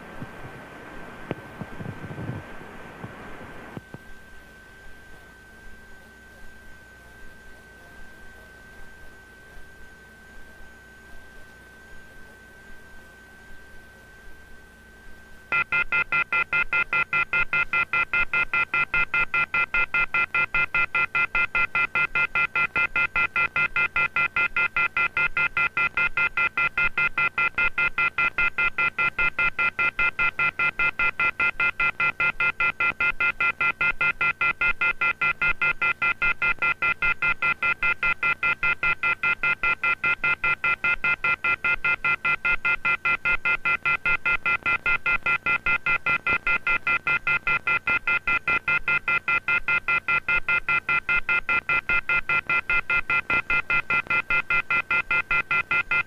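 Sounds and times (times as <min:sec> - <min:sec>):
telephone off-hook warning tone: 0:15.5 - 0:56.0.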